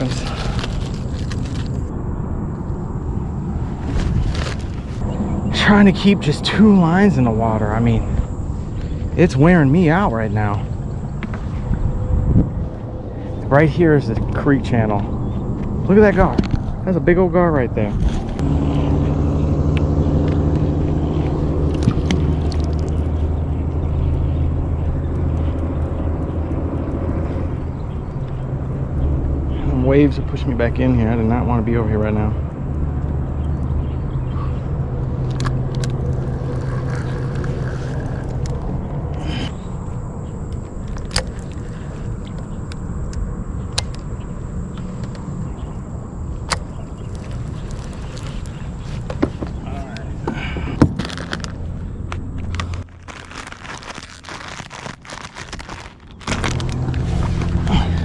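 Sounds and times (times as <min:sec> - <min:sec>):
boat engine running: 0:00.0 - 0:01.9, 0:18.2 - 0:58.0
wind and waves rumble: 0:00.0 - 0:17.1
faint high whine: 0:00.0 - 0:25.0, 0:33.4 - 0:58.0.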